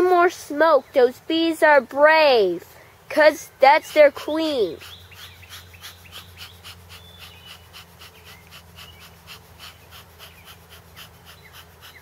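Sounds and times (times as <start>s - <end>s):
steady low hum: 0.0s - 12.0s
rapid rhythmic air puffs: 2.9s - 12.0s.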